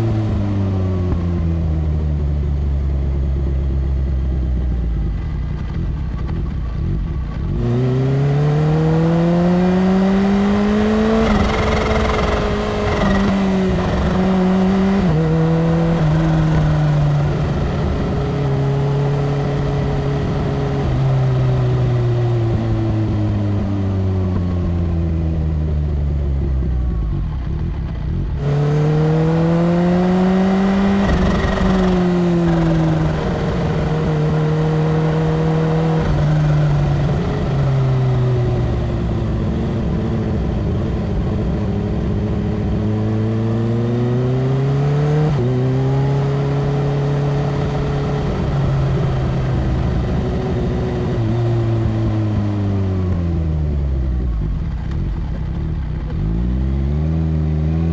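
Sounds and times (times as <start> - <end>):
motorcycle engine at speed: 0.0 - 57.9.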